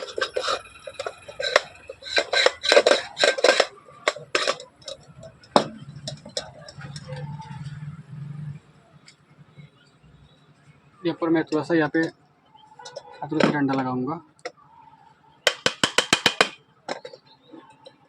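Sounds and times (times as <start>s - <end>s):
metal fan body clinking: 0.0s - 7.7s.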